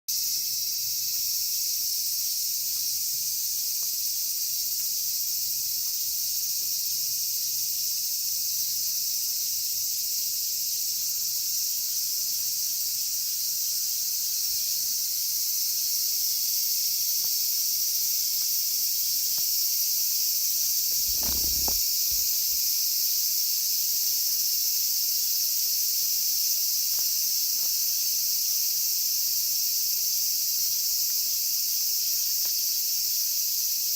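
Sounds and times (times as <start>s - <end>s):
cicadas singing: 6.4s - 22.6s
low thump: 21.0s - 22.6s.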